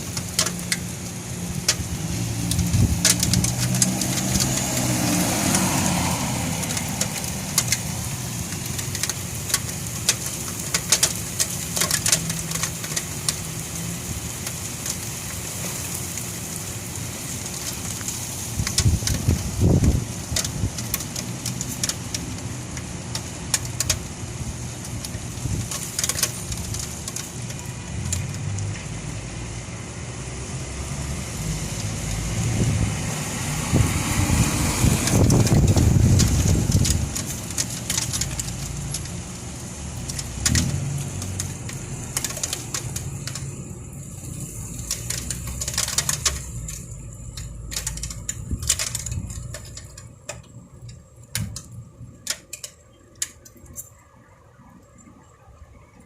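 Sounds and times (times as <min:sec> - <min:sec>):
rain: 0:00.0 - 0:56.0
wind: 0:00.0 - 0:56.0.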